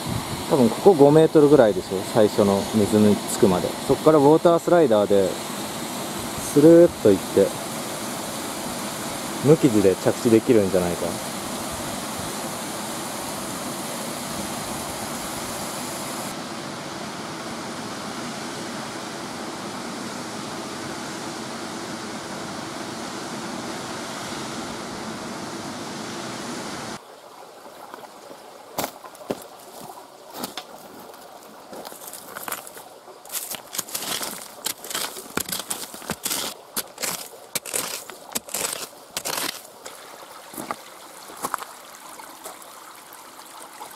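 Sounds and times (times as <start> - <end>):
water rushing down a dam: 0.0 - 16.4.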